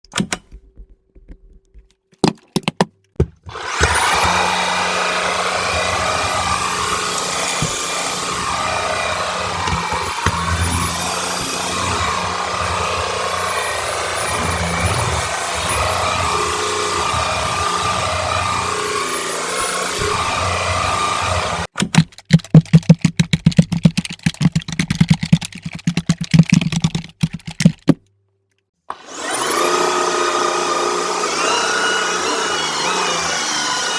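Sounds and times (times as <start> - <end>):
vacuum cleaner whining: 3.5 - 21.7, 28.9 - 33.9
loud knocks and clatter: 22.0 - 28.0.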